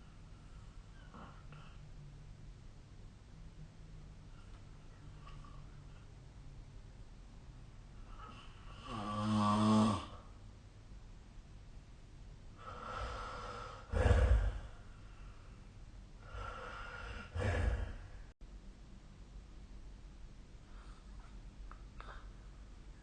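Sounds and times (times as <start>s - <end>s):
person snoring: 8.1s - 10.3s, 12.6s - 14.9s, 16.2s - 18.2s.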